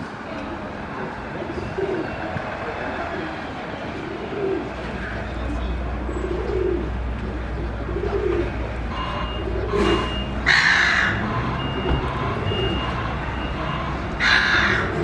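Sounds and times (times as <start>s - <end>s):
low engine rumble: 0.0s - 15.0s
pigeon cooing: 1.0s - 2.2s, 4.0s - 4.8s, 6.1s - 7.0s, 7.6s - 12.9s, 13.5s - 15.0s
reversing beeper: 8.9s - 10.5s, 11.1s - 14.2s.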